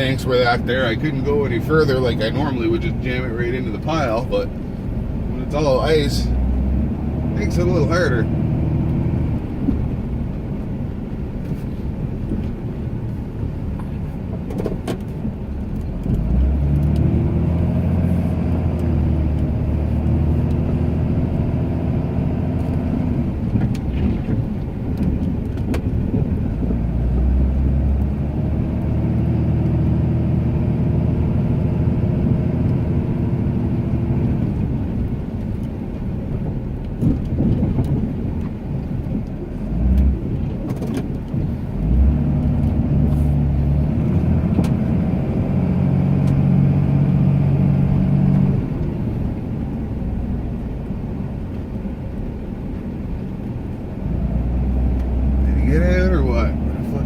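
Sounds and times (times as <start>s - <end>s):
pickup truck engine revving: 0.0s - 12.3s, 15.8s - 24.5s, 39.6s - 51.4s, 53.0s - 57.0s.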